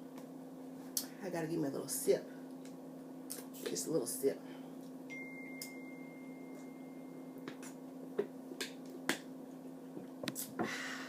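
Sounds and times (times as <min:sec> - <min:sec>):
low hum: 0:04.5 - 0:11.0.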